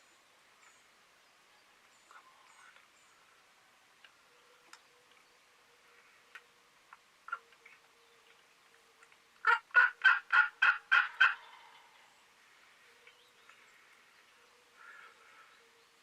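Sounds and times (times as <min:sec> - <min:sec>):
turkey gobbling: 0:09.4 - 0:12.0.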